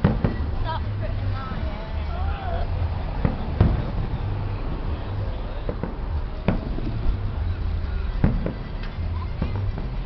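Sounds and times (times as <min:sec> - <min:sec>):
fireworks banging: 0:00.0 - 0:10.0
low rumble: 0:00.0 - 0:10.0.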